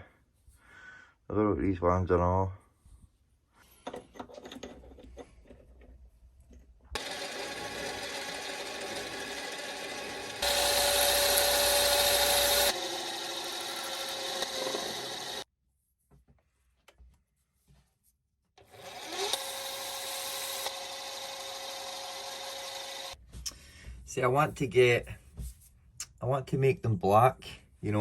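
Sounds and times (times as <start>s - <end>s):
cutting tool on steel: 7.0s - 15.4s, 18.6s - 23.2s
lathe whining: 7.0s - 15.4s, 18.6s - 23.2s.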